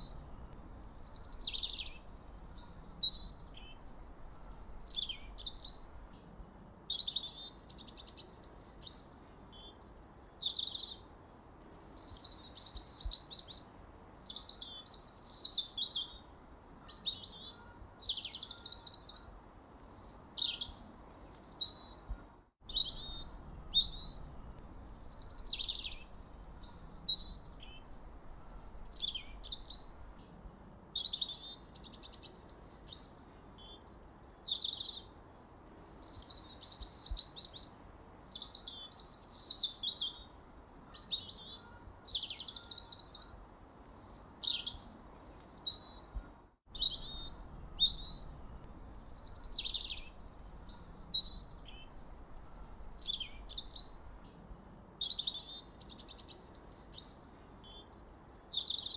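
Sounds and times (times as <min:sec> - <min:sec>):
faint background hiss: 0:00.0 - 0:58.9
songbirds chirping and warbling: 0:00.0 - 0:58.9.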